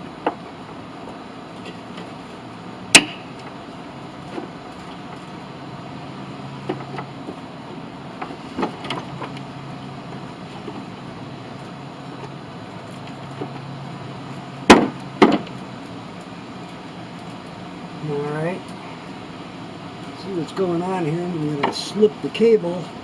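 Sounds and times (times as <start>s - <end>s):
steady low hum: 0.0s - 23.0s
loud sharp knocks: 2.9s - 3.3s, 14.7s - 15.5s
knocks and clicks of tools: 2.9s - 3.5s.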